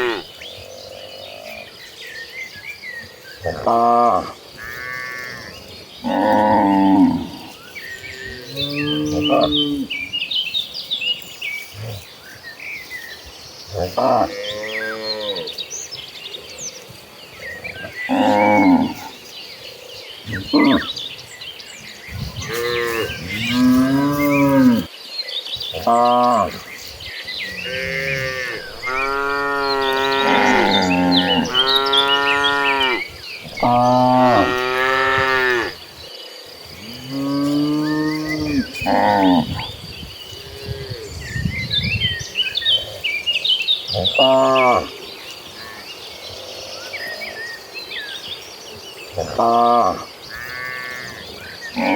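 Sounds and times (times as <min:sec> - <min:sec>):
cattle mooing: 0:00.0 - 0:00.3, 0:27.5 - 0:33.0, 0:33.6 - 0:35.8
birds chirping faintly: 0:00.0 - 0:51.9
high insect whine: 0:00.0 - 0:51.9.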